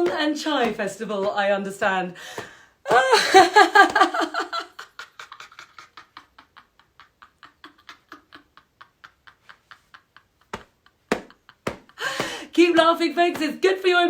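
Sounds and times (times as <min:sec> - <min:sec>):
woman laughing: 0:02.9 - 0:12.8.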